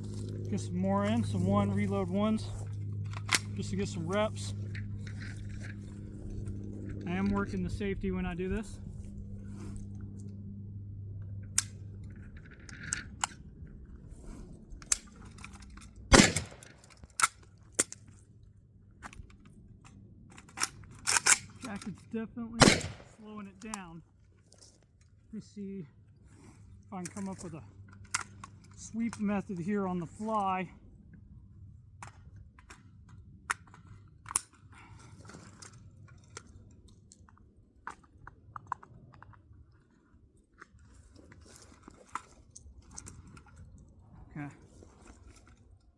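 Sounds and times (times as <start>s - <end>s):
rifle reload metal clicks: 3.1s - 5.7s, 14.8s - 18.0s, 20.3s - 22.0s, 22.6s - 23.8s
loud gunshot: 16.1s - 16.8s, 22.6s - 23.2s.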